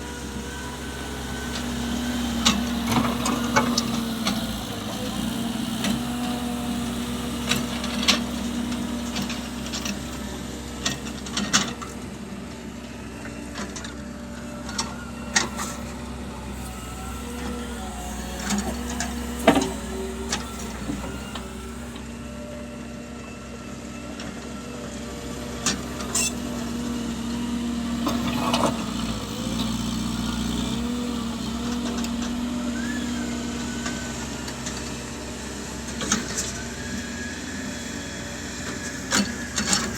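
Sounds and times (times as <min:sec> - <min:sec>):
engine running: 0:00.0 - 0:39.9.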